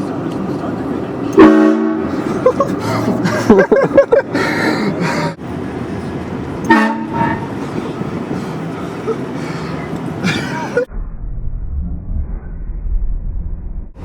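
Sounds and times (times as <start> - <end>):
train horn blast: 1.4 - 2.2, 6.6 - 7.6.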